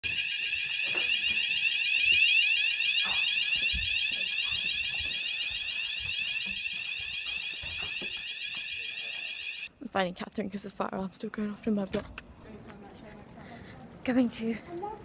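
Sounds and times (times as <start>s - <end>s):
fire alarm warbling tone: 0.0s - 9.7s.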